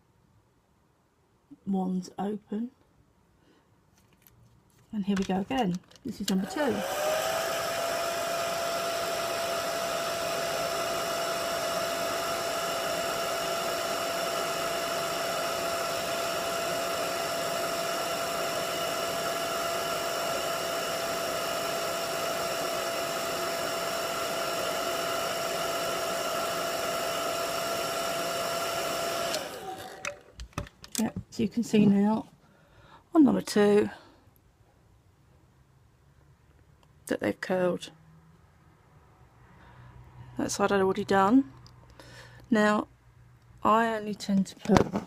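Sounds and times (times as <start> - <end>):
hairdryer running: 6.3 - 30.4.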